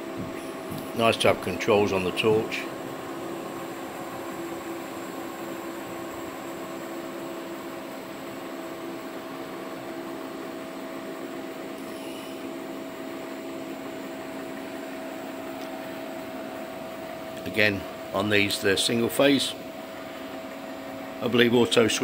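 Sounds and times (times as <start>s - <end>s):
welding machine hum with hiss: 0.0s - 22.0s.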